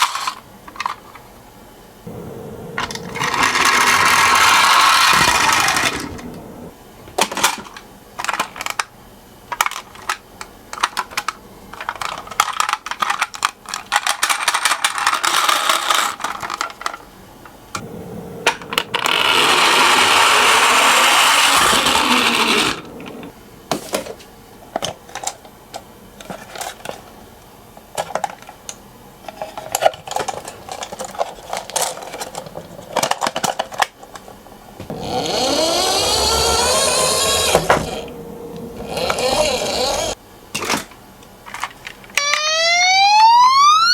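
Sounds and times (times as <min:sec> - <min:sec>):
toy cars clattering on track: 0:00.0 - 0:01.3, 0:02.8 - 0:06.2, 0:07.2 - 0:08.9, 0:09.5 - 0:17.1, 0:18.5 - 0:27.1, 0:27.9 - 0:34.3, 0:34.9 - 0:38.1, 0:38.8 - 0:42.4
loud steady whirring: 0:02.1 - 0:06.8, 0:17.8 - 0:23.3, 0:34.9 - 0:40.2.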